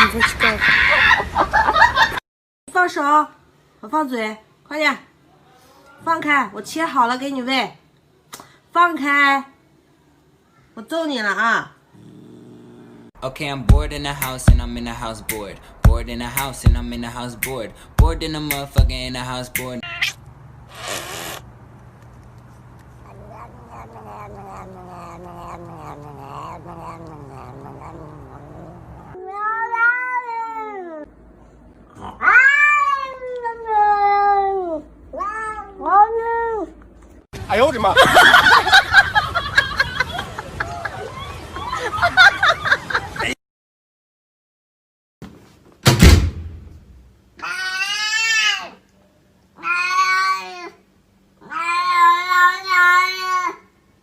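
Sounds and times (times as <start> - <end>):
cat yowling and meowing: 19.8 - 20.2, 23.0 - 31.1, 32.1 - 36.7, 47.4 - 48.8, 49.6 - 50.8, 51.4 - 53.7
loud thump: 45.8 - 47.1.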